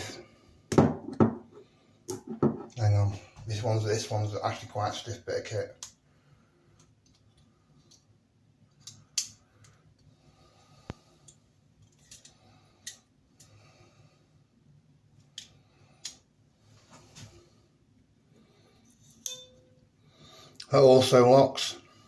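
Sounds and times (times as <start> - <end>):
multi-tool clicking and snapping: 8.7 - 9.8.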